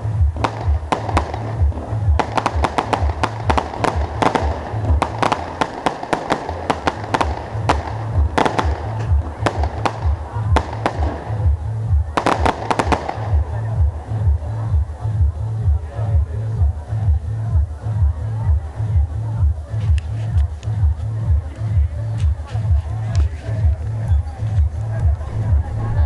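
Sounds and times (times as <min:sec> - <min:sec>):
music with pulsing bass beat: 0:00.0 - 0:26.0
fireworks bangs and cracks: 0:00.4 - 0:11.5, 0:12.2 - 0:13.4.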